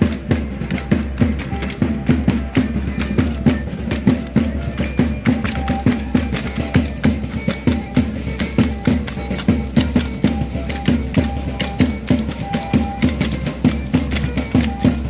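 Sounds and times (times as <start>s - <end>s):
sharp percussive beats: 0.0s - 15.0s
violin melody: 0.0s - 15.0s.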